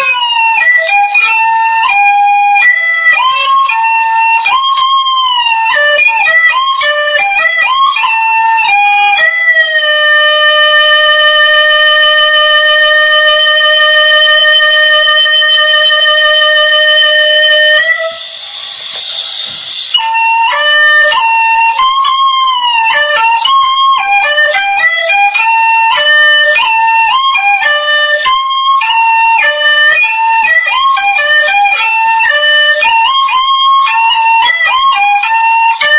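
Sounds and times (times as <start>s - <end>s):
bamboo flute melody: 0.0s - 35.9s.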